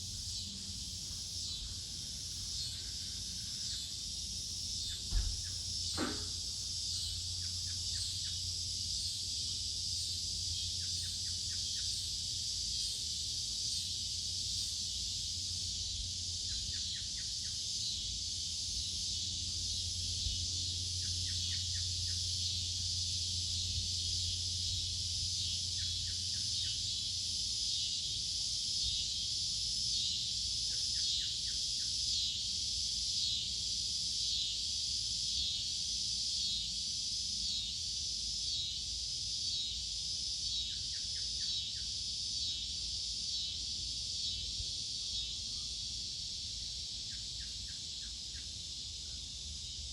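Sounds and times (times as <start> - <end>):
high insect drone: 0.0 - 49.9
knock: 5.1 - 6.3.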